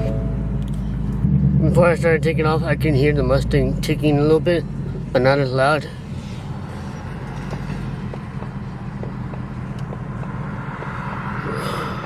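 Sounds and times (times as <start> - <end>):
car engine idling: 0.0 - 12.0
engine ticking: 6.8 - 12.0.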